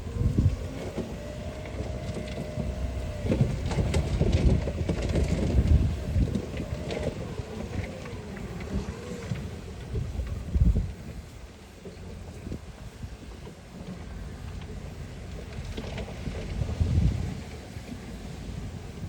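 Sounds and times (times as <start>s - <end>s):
wavering machinery whine: 0.0s - 11.2s
diesel engine rumble: 0.0s - 19.0s
wind buffeting microphone: 0.0s - 19.0s.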